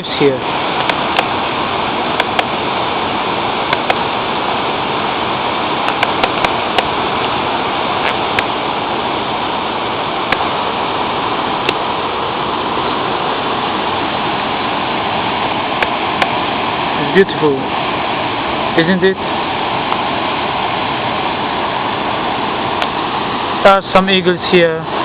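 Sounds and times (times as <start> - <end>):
waterfall rushing: 0.0 - 25.0
sharp clicks: 0.8 - 1.3, 2.2 - 2.5, 3.7 - 4.0, 5.8 - 6.9.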